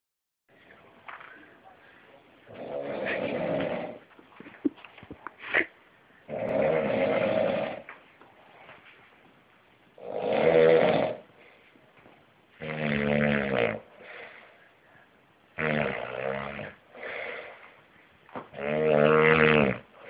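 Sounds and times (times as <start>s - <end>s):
man snoring: 2.5s - 4.0s, 6.3s - 7.9s, 10.0s - 11.3s, 12.6s - 13.9s, 15.6s - 17.4s, 18.5s - 19.9s
soft breathing: 13.9s - 15.2s, 16.9s - 18.3s.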